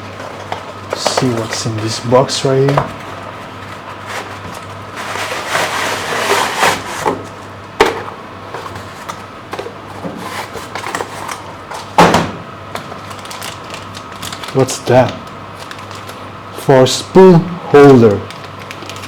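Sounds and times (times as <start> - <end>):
rummaging through cardboard box: 0.2 - 2.1, 2.9 - 12.0, 13.0 - 14.6.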